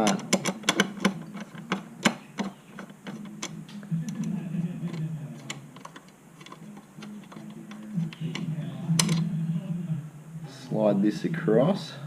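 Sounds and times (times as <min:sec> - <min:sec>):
screwdriver clicking and tapping: 0:00.0 - 0:03.5, 0:04.9 - 0:08.4.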